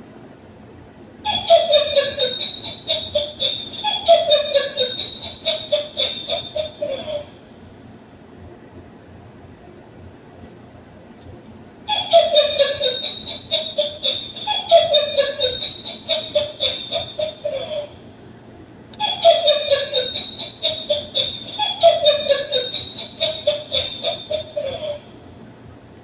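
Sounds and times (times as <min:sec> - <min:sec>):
toy playing recorded laughter: 0:01.2 - 0:07.4, 0:11.9 - 0:18.0, 0:19.0 - 0:25.2.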